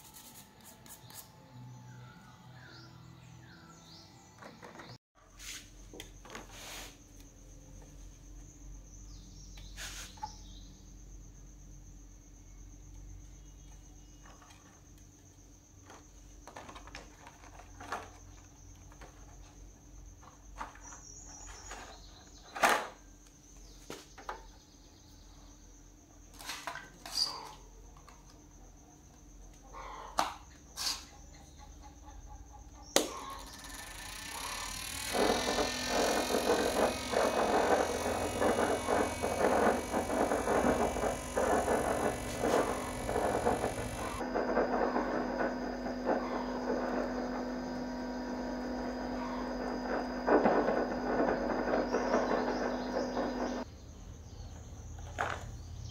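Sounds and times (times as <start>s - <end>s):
faint steady hum: 32.5s - 54.5s
high whine: 34.4s - 53.7s.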